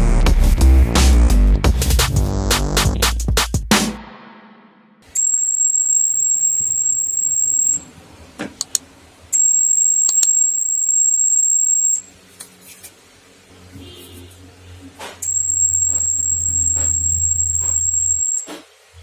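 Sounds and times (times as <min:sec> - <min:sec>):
high-pitched alarm buzzer: 0:05.1 - 0:07.9, 0:09.4 - 0:12.0, 0:15.2 - 0:18.6
sharp clicks: 0:08.6 - 0:08.8, 0:10.0 - 0:10.5.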